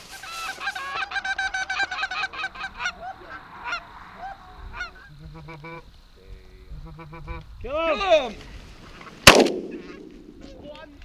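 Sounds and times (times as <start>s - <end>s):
geese honking: 0.0s - 7.4s.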